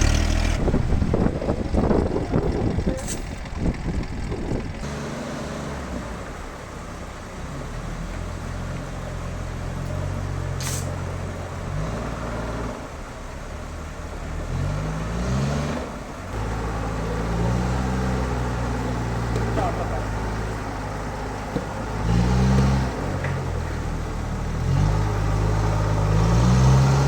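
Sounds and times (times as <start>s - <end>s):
machine engine humming and revving: 0.0s - 27.0s
short hiss: 10.6s - 11.0s.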